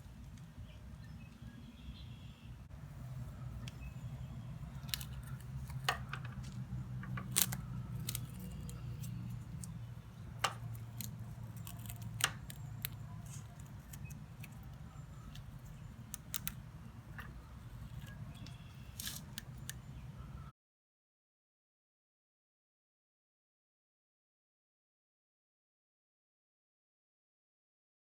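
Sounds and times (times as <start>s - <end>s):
steady low hum: 0.0s - 20.5s
tape crackles and clicks: 3.0s - 20.2s.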